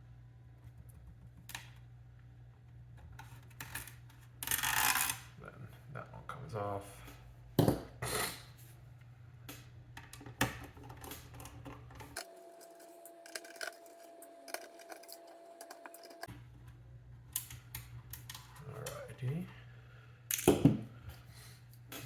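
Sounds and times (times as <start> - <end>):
small parts clicking and tapping: 9.5 - 16.3.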